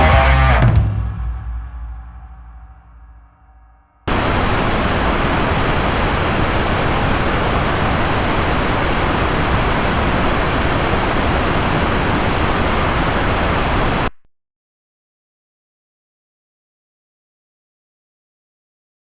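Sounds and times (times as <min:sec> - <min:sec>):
pink noise hiss: 0:04.1 - 0:14.2.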